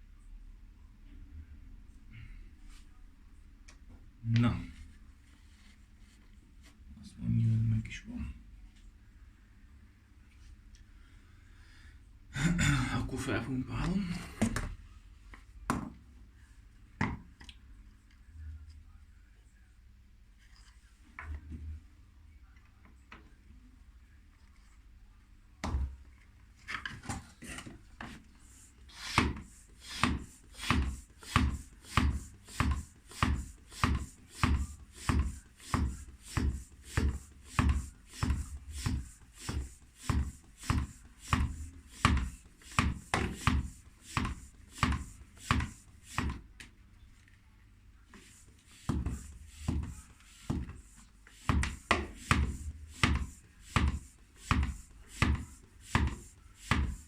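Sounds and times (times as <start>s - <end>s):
bicycle hand pump strokes: 28.9s - 46.4s.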